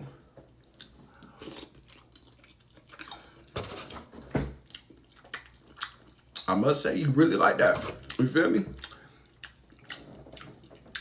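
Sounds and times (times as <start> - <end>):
person chewing and smacking food: 0.5 - 3.5, 4.6 - 6.5, 8.8 - 11.0.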